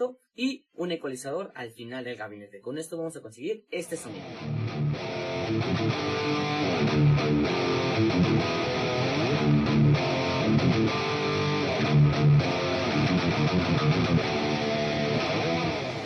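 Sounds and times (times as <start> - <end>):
distorted electric guitar riff: 4.1 - 16.0.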